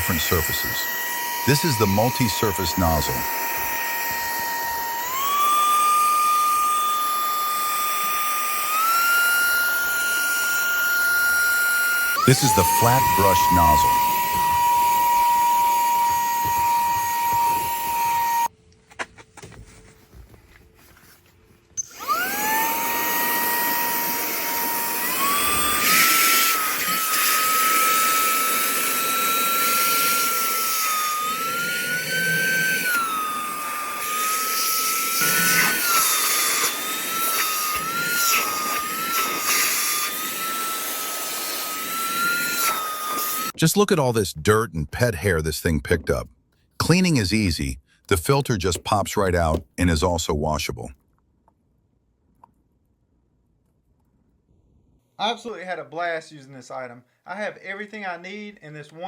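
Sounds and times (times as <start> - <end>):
handheld vacuum motor whine: 0.0 - 18.5, 21.8 - 43.6.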